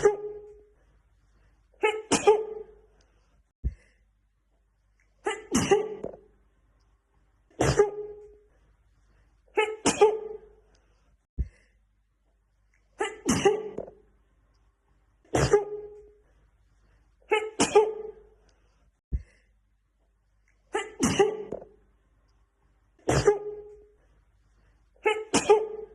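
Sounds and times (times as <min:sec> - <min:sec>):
woman sneezing: 0:00.0 - 0:00.4, 0:01.8 - 0:02.8, 0:05.2 - 0:06.1, 0:07.6 - 0:08.2, 0:09.6 - 0:10.5, 0:13.0 - 0:13.8, 0:15.3 - 0:16.0, 0:17.3 - 0:18.2, 0:20.7 - 0:21.6, 0:23.0 - 0:23.7, 0:25.0 - 0:25.9.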